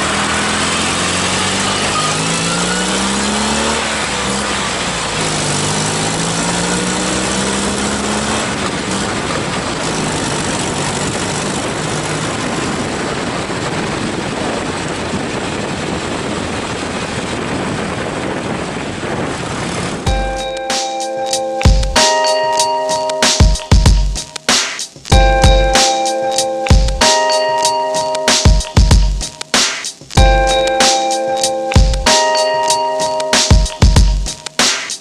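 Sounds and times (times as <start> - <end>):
small car engine revving: 0.0 - 17.4
music: 20.1 - 35.0.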